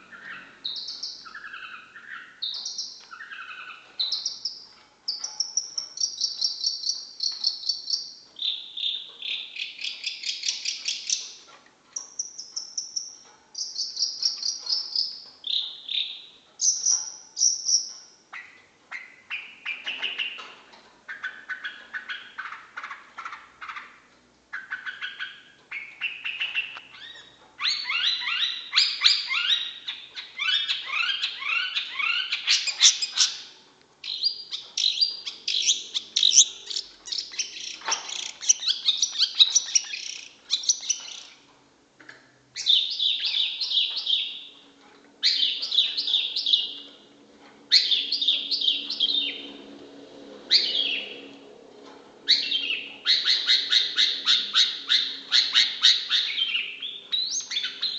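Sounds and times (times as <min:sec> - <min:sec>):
bird singing chattering phrases: 0:00.0 - 0:20.4, 0:21.1 - 0:41.4, 0:52.3 - 0:57.9.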